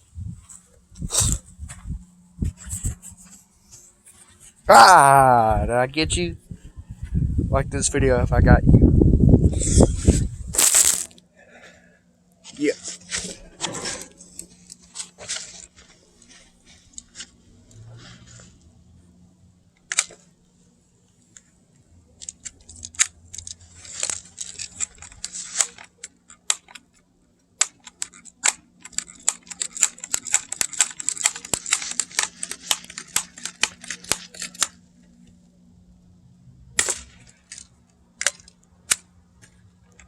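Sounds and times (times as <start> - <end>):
bb gun clicks and snaps: 19.8 - 20.2, 27.6 - 34.8, 36.8 - 40.0.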